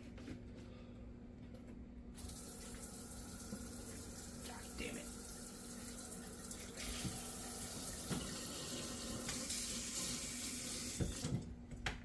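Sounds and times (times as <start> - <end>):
tap running water into sink: 5.6 - 11.5.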